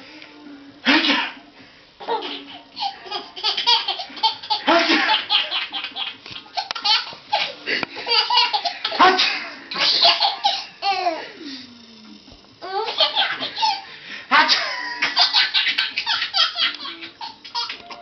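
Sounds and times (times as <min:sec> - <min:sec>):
baby laughing: 0:02.0 - 0:11.2, 0:12.6 - 0:13.9, 0:14.5 - 0:17.9.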